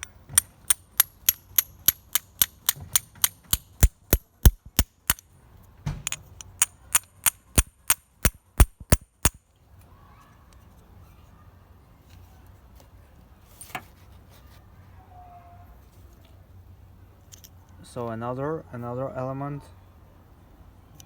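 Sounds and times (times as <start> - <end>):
sharp metallic clicks: 0.0 - 5.2, 6.0 - 9.4.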